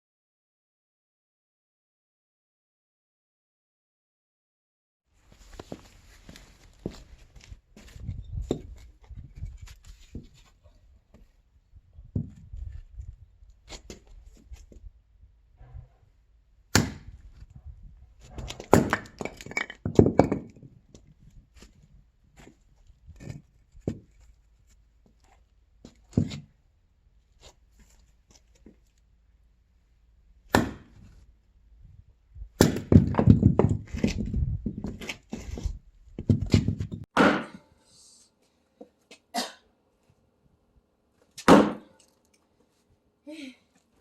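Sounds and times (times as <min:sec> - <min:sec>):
axe chopping firewood: 0:16.7 - 0:17.2, 0:18.4 - 0:20.6, 0:30.5 - 0:31.1, 0:32.6 - 0:34.2, 0:36.2 - 0:37.7, 0:41.4 - 0:42.0.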